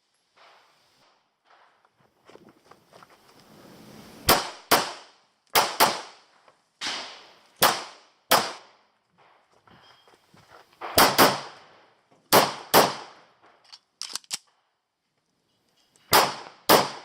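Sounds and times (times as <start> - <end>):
pistol shots: 4.3 - 6.2, 6.8 - 8.8, 10.8 - 11.6, 12.3 - 13.2, 16.1 - 17.0.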